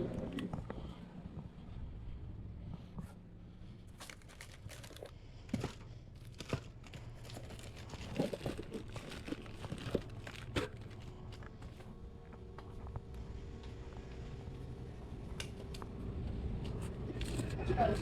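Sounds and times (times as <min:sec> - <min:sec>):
plastic wrap crinkling and tearing: 0:04.0 - 0:05.1, 0:06.2 - 0:11.2.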